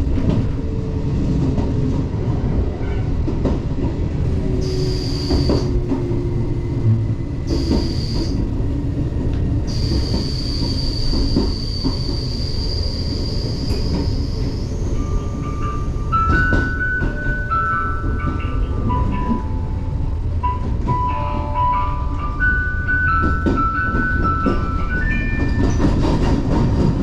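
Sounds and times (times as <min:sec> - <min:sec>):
train wheels rumbling on rail: 0:00.0 - 0:27.0
high squeal: 0:04.6 - 0:05.8, 0:07.5 - 0:08.4, 0:09.7 - 0:15.3.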